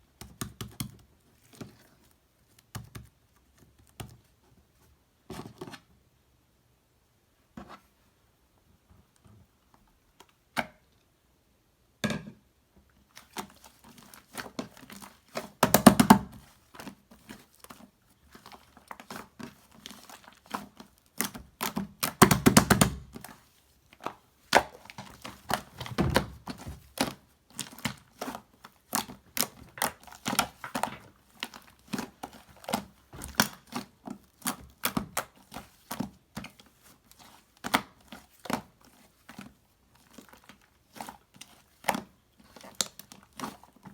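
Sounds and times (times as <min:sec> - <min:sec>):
slime clicking and crackling: 0:13.2 - 0:39.4.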